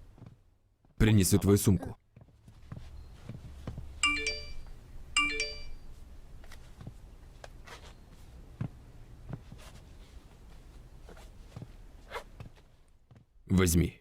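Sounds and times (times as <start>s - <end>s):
electronic phone chime: 4.0s - 5.9s.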